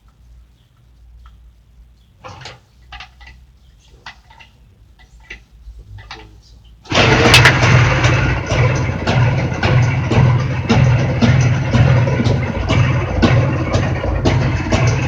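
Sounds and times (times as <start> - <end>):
motorcycle engine knocking: 6.9 - 15.0.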